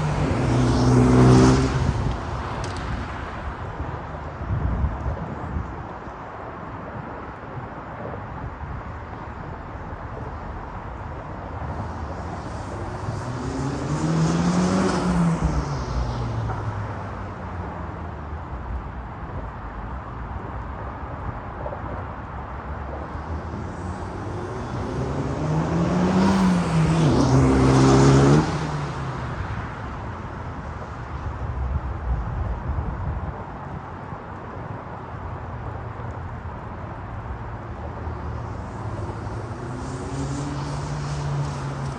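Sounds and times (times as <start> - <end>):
car engine accelerating hard: 23.6 - 29.0.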